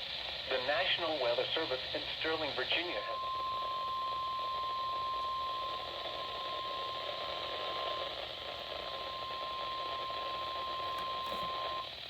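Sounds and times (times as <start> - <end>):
radio static hiss: 0.0 - 3.8, 5.7 - 12.0
steady warning alarm tone: 2.9 - 12.0.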